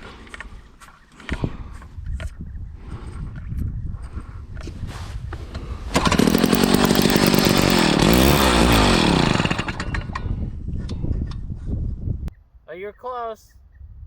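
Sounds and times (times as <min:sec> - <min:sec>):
ice auger engine running: 0:05.9 - 0:10.1.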